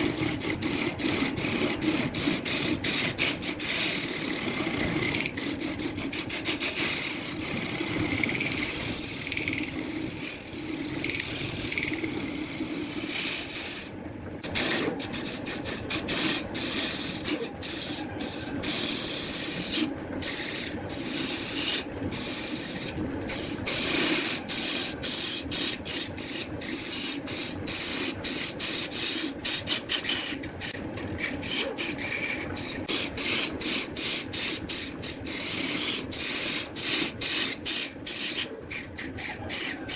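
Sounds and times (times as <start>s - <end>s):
wood lathe humming: 0.0s - 39.9s
lathe tool cutting wood hiss: 14.5s - 30.3s.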